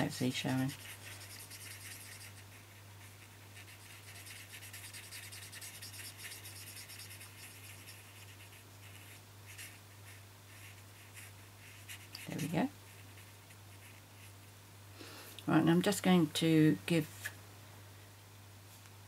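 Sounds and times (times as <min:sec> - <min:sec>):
marker scratching on cardstock: 0:00.2 - 0:14.4.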